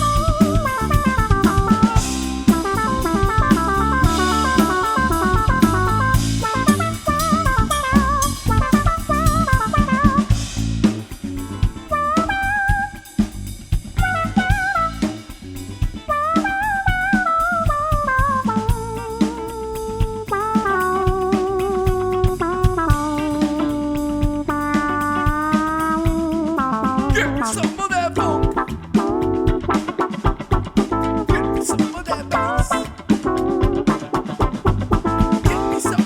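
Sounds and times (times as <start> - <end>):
drum kit groove: 0.0 - 36.0
lead melody with bending notes: 0.0 - 36.0.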